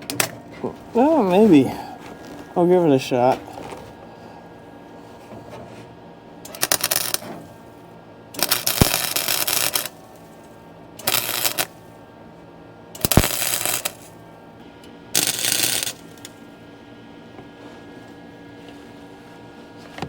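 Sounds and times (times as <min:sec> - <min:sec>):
welder arc crackling: 0:00.9 - 0:03.8, 0:06.5 - 0:07.6, 0:08.4 - 0:10.4, 0:11.0 - 0:11.9, 0:13.0 - 0:14.2, 0:15.2 - 0:16.4.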